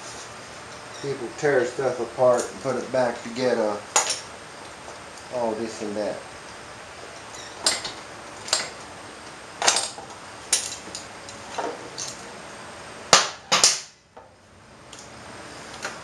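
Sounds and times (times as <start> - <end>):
knocks and clacks of tools: 9.6 - 12.2.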